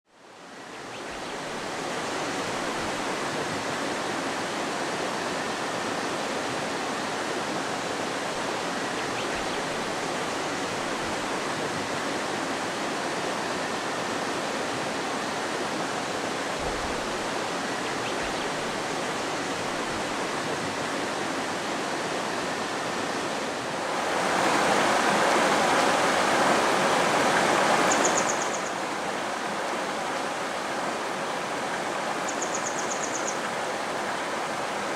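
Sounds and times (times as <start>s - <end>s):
river babbling over stones: 1.3s - 34.9s
small bird twittering: 27.9s - 28.8s, 32.2s - 33.4s.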